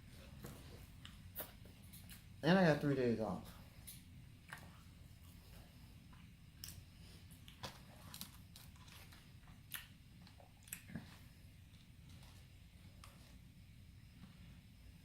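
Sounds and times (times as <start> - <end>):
person chewing food: 0.2 - 2.4, 3.8 - 13.4.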